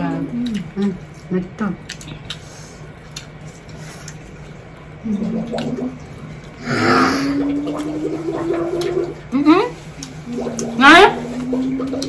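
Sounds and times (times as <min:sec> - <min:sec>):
person humming while eating: 0:06.6 - 0:08.1.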